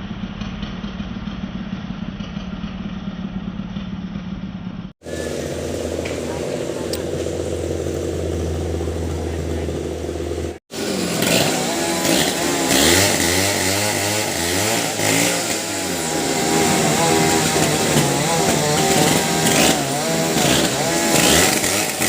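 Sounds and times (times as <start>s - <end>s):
engine idling: 0.0s - 22.0s
chainsaw revving: 5.0s - 22.0s.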